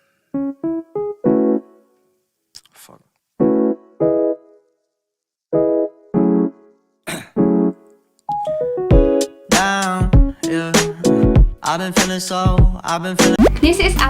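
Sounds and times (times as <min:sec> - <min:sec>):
keyboard chords: 0:00.0 - 0:02.1, 0:03.4 - 0:04.7, 0:05.5 - 0:11.6.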